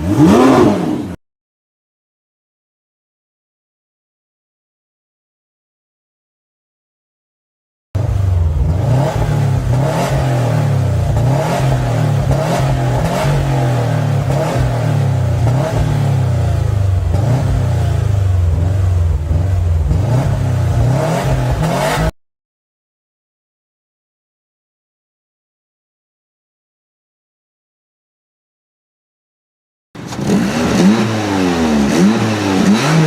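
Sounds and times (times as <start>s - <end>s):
car engine revving in blips: 0.0s - 1.2s, 8.0s - 22.2s, 30.0s - 33.0s.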